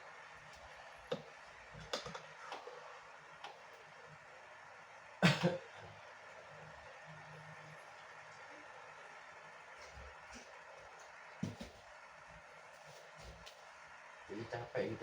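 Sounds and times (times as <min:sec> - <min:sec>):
faint clicks and taps: 0:00.4 - 0:03.9
person coughing: 0:05.2 - 0:05.7.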